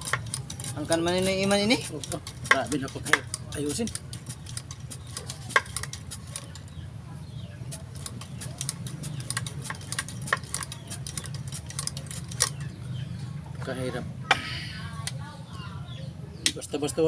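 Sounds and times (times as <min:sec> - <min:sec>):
metallic clicks of hand tools: 0:00.0 - 0:06.7.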